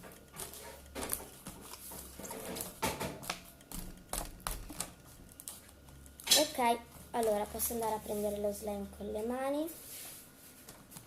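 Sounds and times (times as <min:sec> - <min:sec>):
utensil clicking against bowl: 0:00.0 - 0:06.5.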